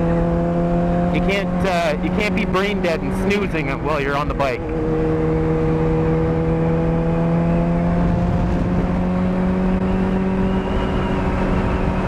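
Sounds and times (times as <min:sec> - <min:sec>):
constant low rumble: 0:00.0 - 0:05.6
motorcycle engine cruising: 0:00.0 - 0:12.0.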